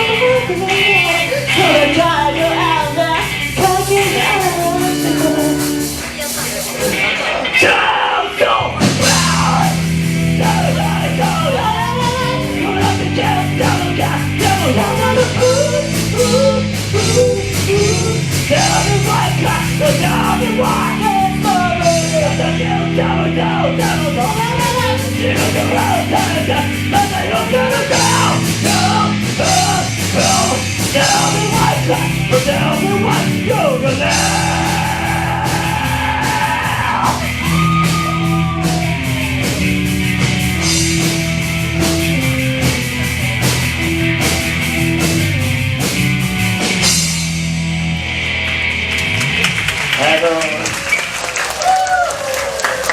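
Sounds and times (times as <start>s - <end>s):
person singing: 0.0s - 6.0s, 6.8s - 39.6s
bass line: 0.0s - 52.9s
drums: 0.0s - 52.9s
rock band playing: 0.0s - 52.9s.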